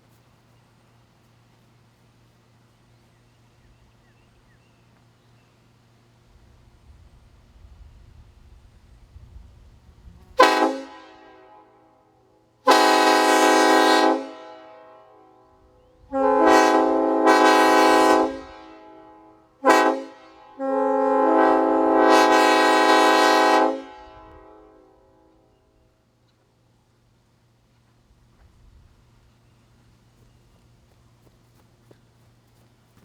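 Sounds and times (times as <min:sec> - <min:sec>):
train horn blasts: 0:10.1 - 0:25.8.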